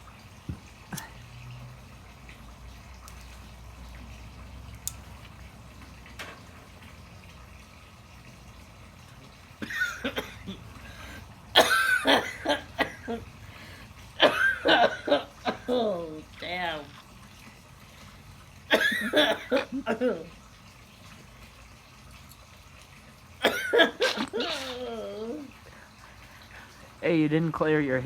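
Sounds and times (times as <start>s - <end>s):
bong water bubbling: 9.1s - 17.3s, 23.4s - 27.0s
woman coughing: 9.6s - 10.6s, 11.6s - 13.2s, 14.2s - 16.0s, 18.7s - 20.3s, 23.4s - 25.4s.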